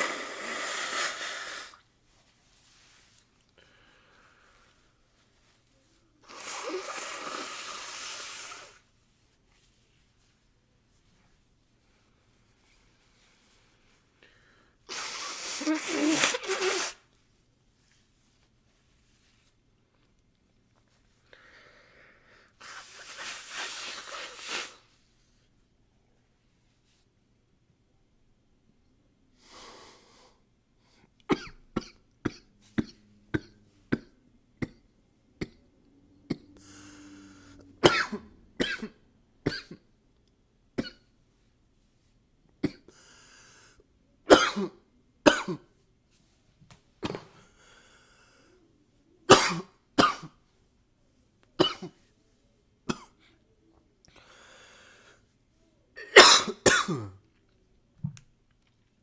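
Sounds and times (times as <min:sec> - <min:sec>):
breaths drawn in: 0:14.9 - 0:17.0
man coughing: 0:56.0 - 0:57.2.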